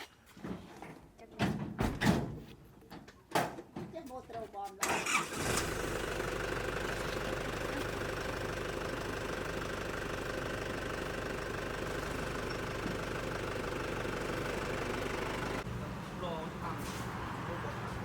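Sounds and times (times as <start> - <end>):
vehicle engine idling: 5.0 - 18.0.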